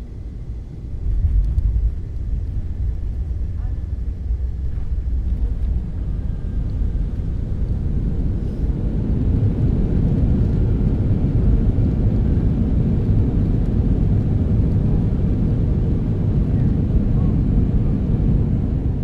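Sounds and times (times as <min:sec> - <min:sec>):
airplane cabin engine rumble: 0:00.0 - 0:19.0.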